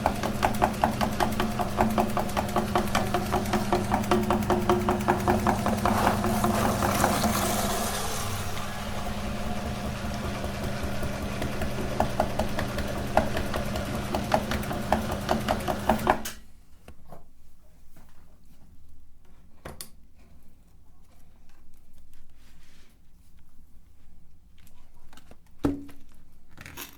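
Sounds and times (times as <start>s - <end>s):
grinder ticking: 0.0s - 16.2s
meat grinder motor hum: 0.0s - 16.2s.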